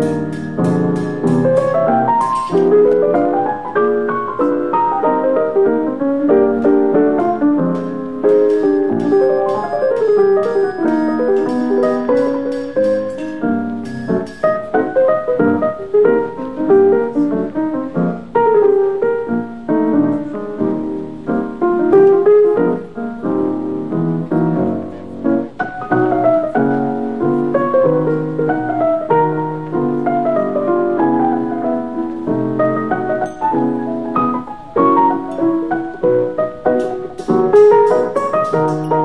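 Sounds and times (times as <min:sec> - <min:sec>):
solo piano melody: 0:00.0 - 0:39.0.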